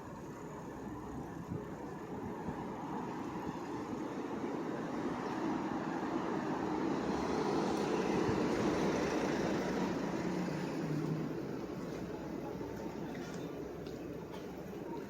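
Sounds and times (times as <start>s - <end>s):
passing vehicle rumble: 2.3s - 12.6s.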